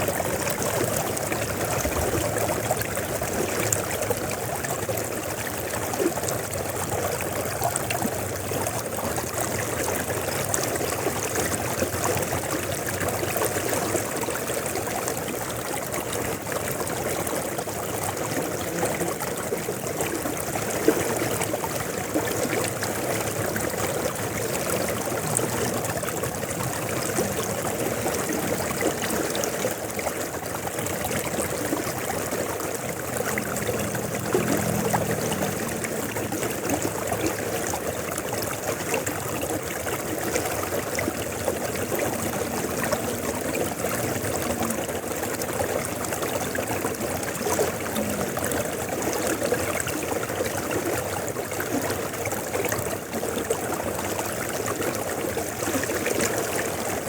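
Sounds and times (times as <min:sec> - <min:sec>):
river water rushing and babbling: 0:00.0 - 0:57.0.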